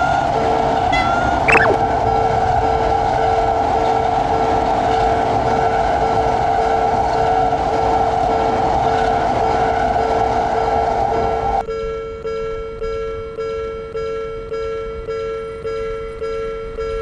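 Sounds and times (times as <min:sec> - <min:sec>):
level crossing alarm pulsing: 0:01.4 - 0:01.8.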